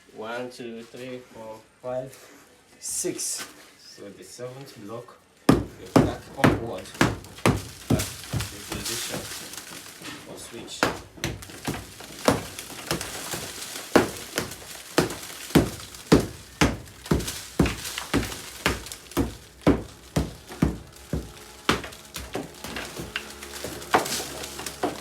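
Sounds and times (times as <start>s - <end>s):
footsteps walking: 5.5s - 25.0s.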